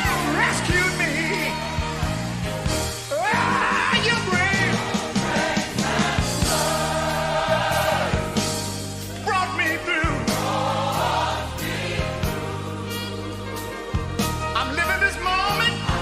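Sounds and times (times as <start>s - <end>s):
band with bass and drums: 0.0s - 16.0s
voices singing gospel: 0.0s - 16.0s.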